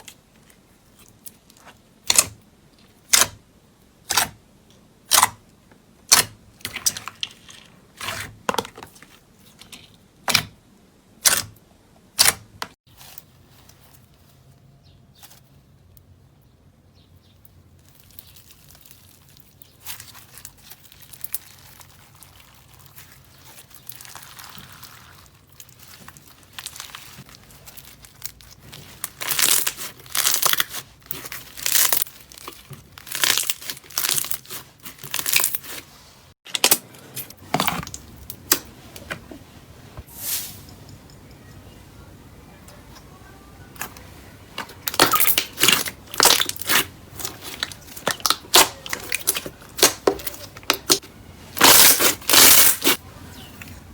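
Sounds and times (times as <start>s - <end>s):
slime crackling: 17.8s - 36.0s, 44.7s - 53.0s.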